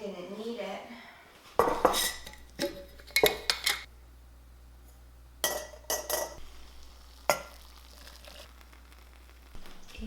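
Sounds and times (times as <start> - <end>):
dishes and utensils clattering: 1.6 - 3.9, 5.4 - 6.4.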